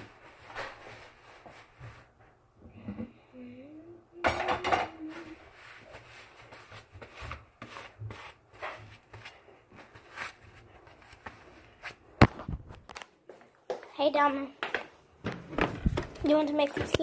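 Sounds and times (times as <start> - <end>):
handling rubbing and rustling: 5.0 - 13.0.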